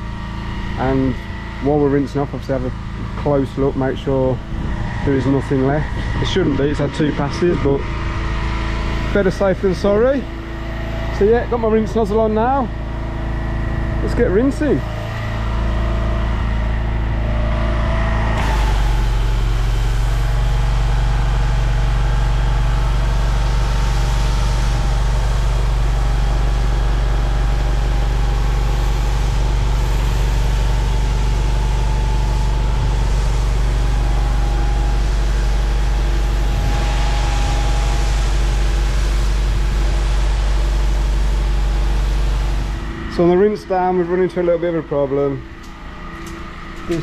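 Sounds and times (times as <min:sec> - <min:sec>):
pressure washer engine running: 0:00.0 - 0:47.0
water spray hissing: 0:18.4 - 0:42.9.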